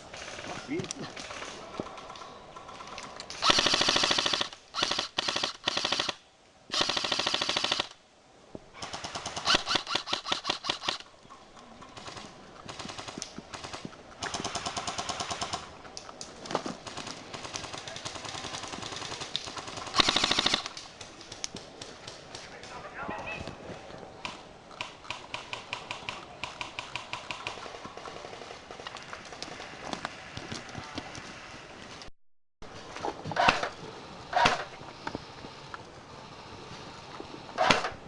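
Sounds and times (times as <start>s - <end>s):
airsoft guns firing bursts: 3.4s - 8.0s, 8.8s - 11.0s, 16.9s - 22.8s.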